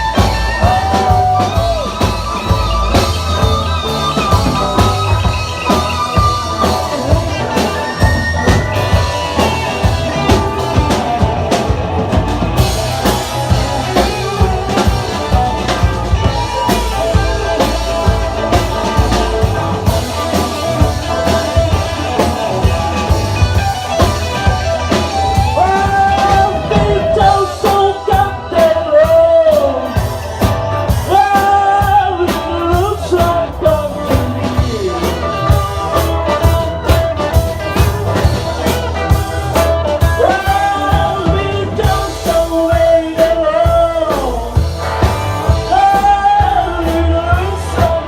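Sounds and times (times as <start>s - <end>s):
drum kit beat: 0.0s - 48.0s
guitar: 0.0s - 48.0s
live rock band playing: 0.0s - 48.0s.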